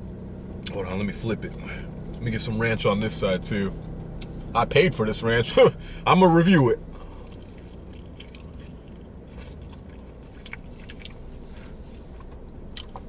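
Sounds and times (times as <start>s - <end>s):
low steady hum: 0.0s - 13.0s
chewing chicken wings: 7.2s - 11.2s.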